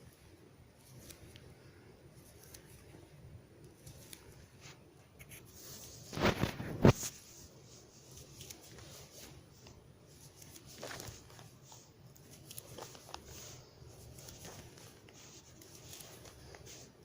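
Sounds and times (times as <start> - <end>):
fishing net rustling: 5.6 - 17.0.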